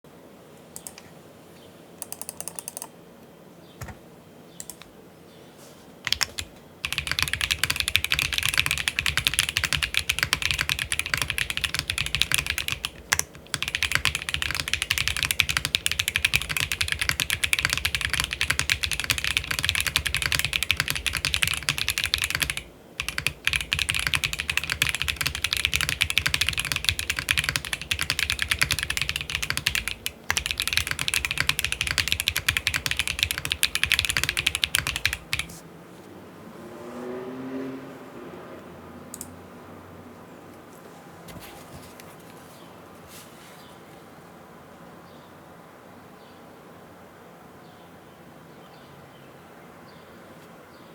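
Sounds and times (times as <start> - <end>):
mechanical keyboard typing: 2.0 - 2.9, 4.6 - 4.9, 6.0 - 35.6.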